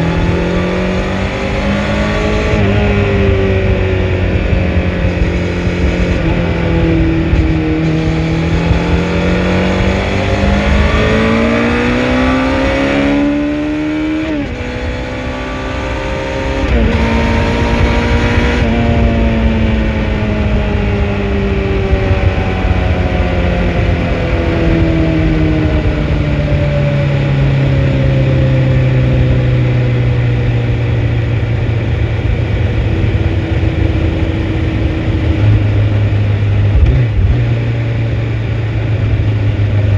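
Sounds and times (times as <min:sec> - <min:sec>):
gear changes: 0:00.0 - 0:26.1
motorcycle engine revving: 0:00.0 - 0:39.9.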